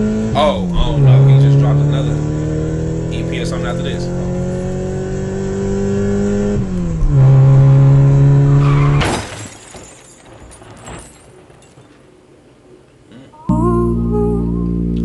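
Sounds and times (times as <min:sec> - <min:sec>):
car engine running: 0:00.0 - 0:09.0
car crash with shattering: 0:08.5 - 0:12.1
scattered debris noises: 0:08.9 - 0:12.6.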